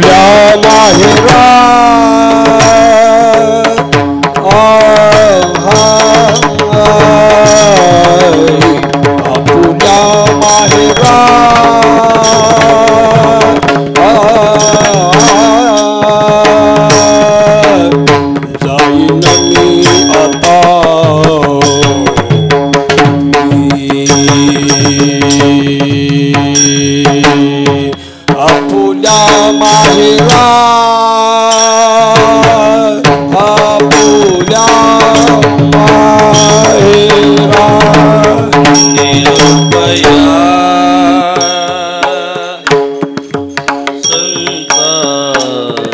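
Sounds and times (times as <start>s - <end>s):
hand drum rhythm: 0.0s - 45.9s
small cymbal rings: 26.6s - 27.4s, 38.6s - 40.3s, 42.6s - 45.8s.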